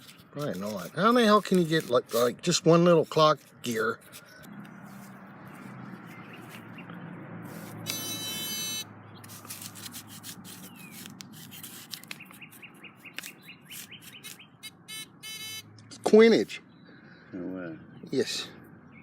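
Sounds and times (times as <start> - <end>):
metal detector buzzing tone: 7.9 - 8.9, 14.2 - 15.6.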